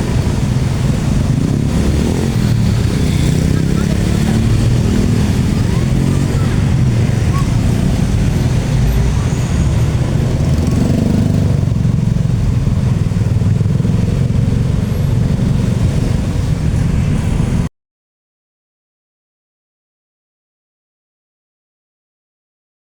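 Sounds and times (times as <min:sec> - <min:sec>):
rumble of passing vehicles: 0:00.0 - 0:17.7.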